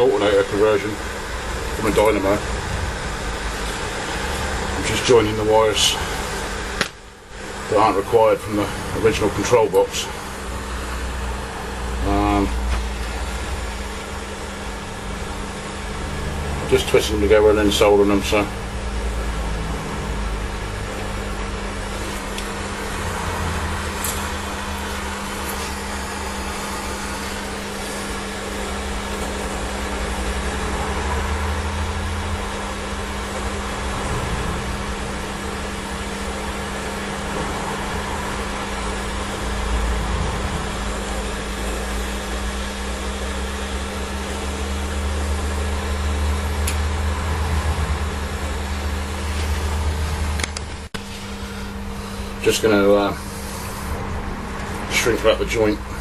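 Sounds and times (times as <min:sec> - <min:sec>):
mechanical fan hum: 0:00.0 - 0:56.0
low rumble: 0:01.1 - 0:05.0.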